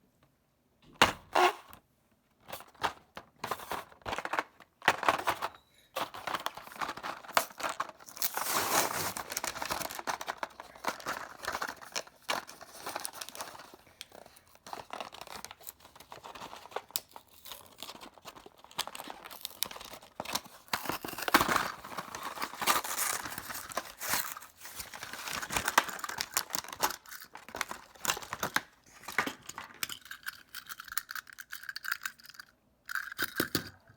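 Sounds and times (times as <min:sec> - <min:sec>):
packaging tearing and crinkling: 0:06.0 - 0:29.5.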